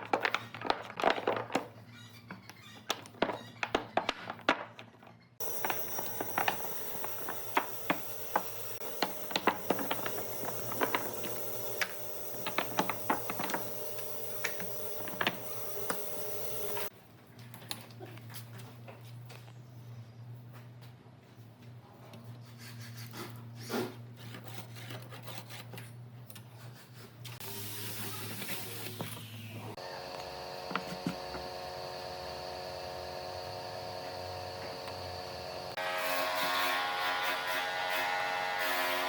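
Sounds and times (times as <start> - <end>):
steady hum and hiss: 5.4 - 16.9.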